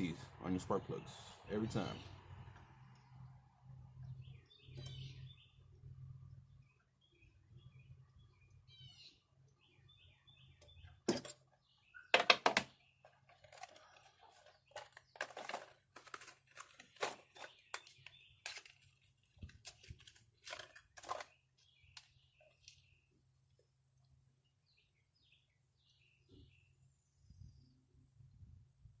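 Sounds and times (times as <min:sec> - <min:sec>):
bird chirping: 0:00.0 - 0:15.7, 0:16.6 - 0:28.0.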